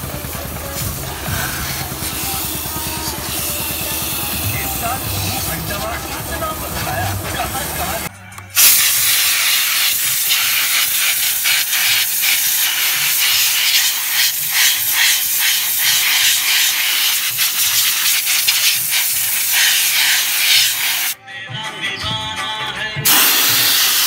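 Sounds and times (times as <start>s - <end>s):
high-pressure water jet hissing: 0.0s - 21.2s, 23.1s - 24.0s.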